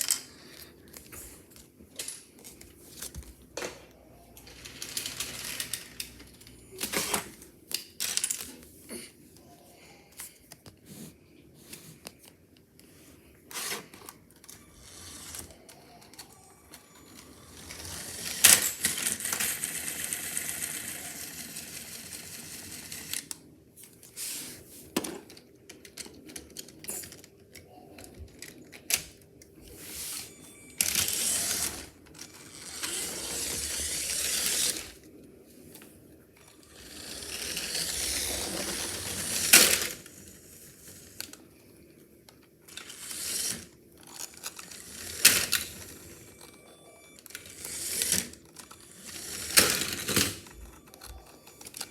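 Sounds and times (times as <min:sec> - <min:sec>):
scraping or rustling noise: 0:24.1 - 0:25.0, 0:29.6 - 0:31.8.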